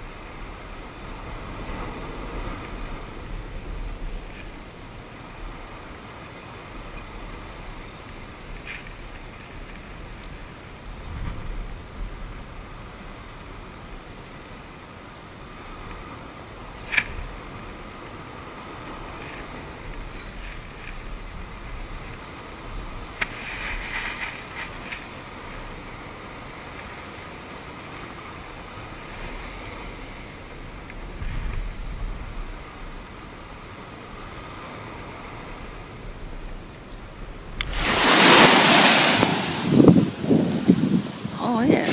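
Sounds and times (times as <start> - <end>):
waves washing: 0.0 - 31.2, 32.2 - 41.9
wind: 0.0 - 41.9
brief splash: 37.6 - 40.7.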